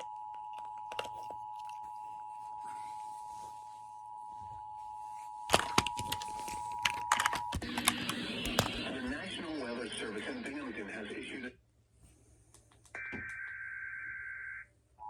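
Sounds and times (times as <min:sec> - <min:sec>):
crackling clicks: 0:05.5 - 0:09.2.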